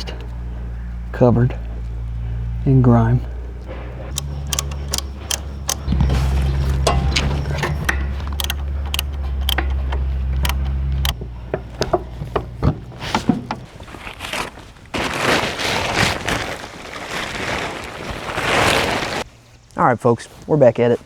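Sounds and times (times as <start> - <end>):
hand tools knocking on metal: 6.8 - 11.2.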